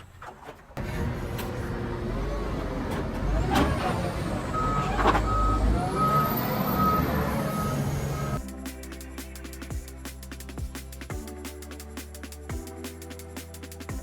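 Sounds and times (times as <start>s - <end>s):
heavy machinery rumbling: 0.8s - 8.4s
reversing alarm beeping: 4.4s - 8.4s.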